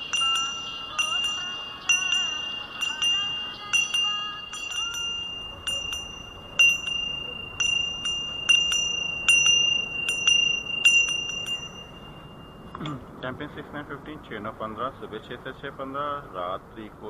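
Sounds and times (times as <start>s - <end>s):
bell rung by clapper: 0.0s - 13.0s.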